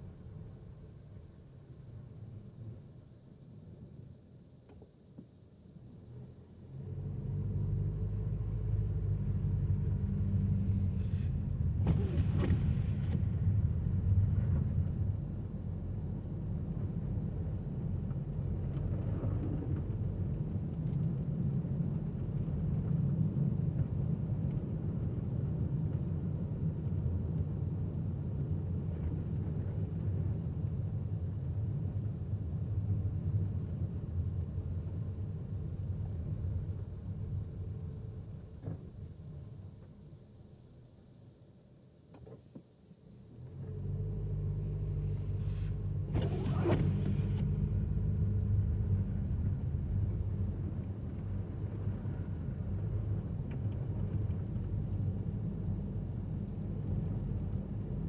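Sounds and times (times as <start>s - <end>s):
car engine and road rumble: 5.8s - 58.0s
brief hisses: 10.3s - 13.3s, 44.7s - 47.6s.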